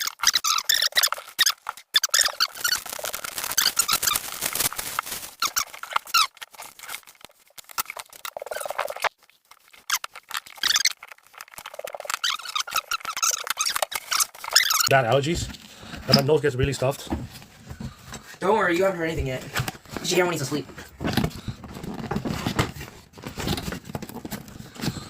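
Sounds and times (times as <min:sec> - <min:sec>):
squeaky nasal sniffs and snorts: 0:00.0 - 0:02.8, 0:09.8 - 0:10.9, 0:12.1 - 0:14.9.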